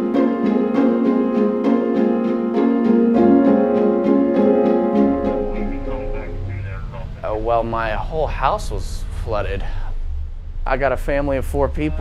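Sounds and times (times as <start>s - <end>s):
piano music with held chords: 0.0s - 6.5s.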